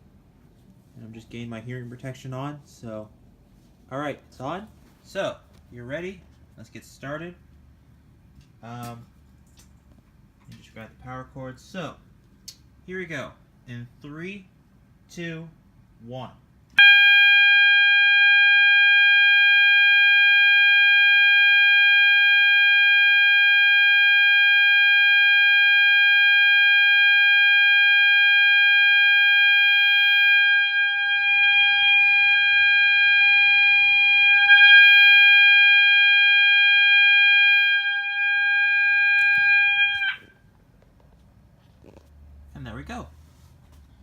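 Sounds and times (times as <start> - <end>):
fire alarm continuous tone: 16.8 - 40.4.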